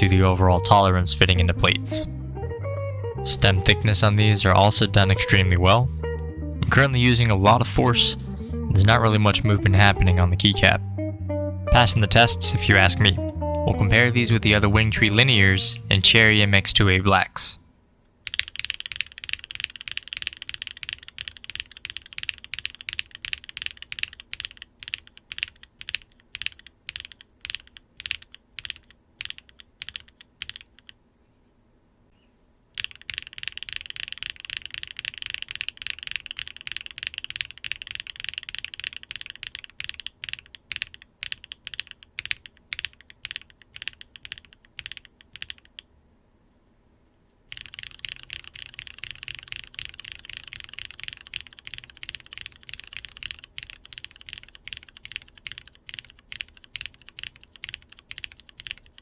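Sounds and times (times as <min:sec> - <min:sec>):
mechanical keyboard typing: 0:18.2 - 0:31.0, 0:32.8 - 0:45.9, 0:47.5 - 0:59.0.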